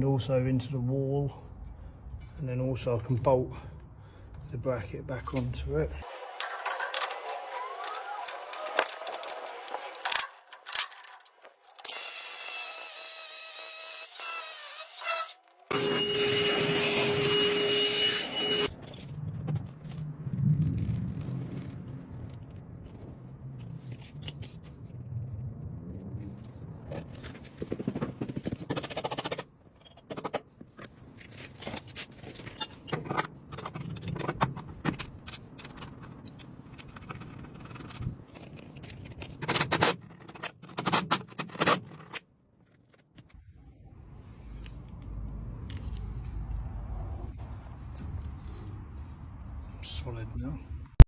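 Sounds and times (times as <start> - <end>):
power tool running: 11.8 - 18.7.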